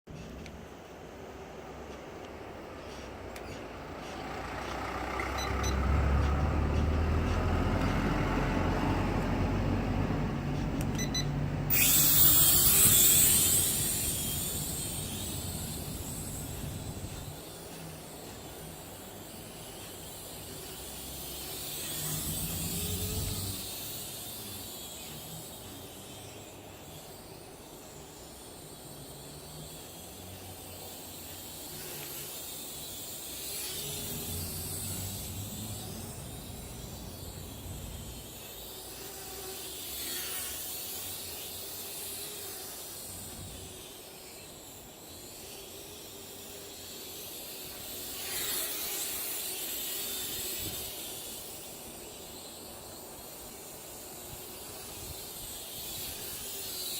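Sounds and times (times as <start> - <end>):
wind buffeting microphone: 12.8 - 17.4.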